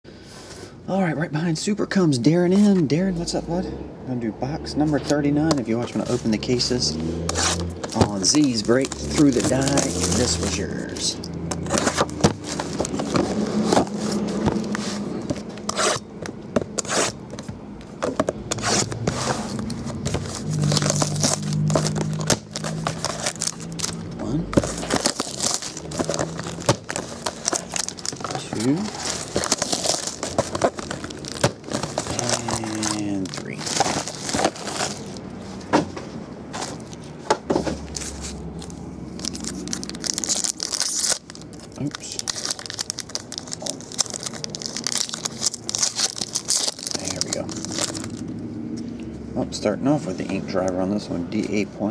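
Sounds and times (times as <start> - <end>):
packaging scrapes and crinkles: 5.7 - 16.1, 16.8 - 17.2, 18.5 - 24.0, 24.6 - 35.2, 37.9 - 48.2.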